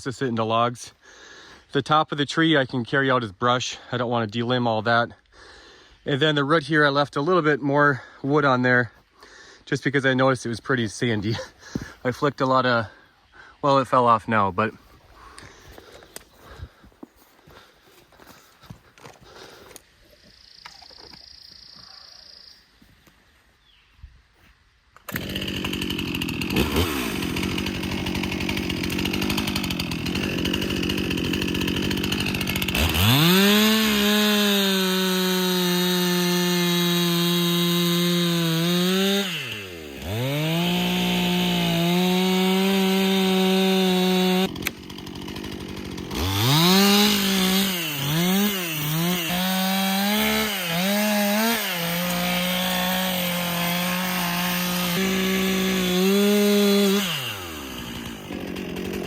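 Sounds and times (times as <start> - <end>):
chainsaw idling and revving: 11.1 - 13.0, 25.1 - 59.0.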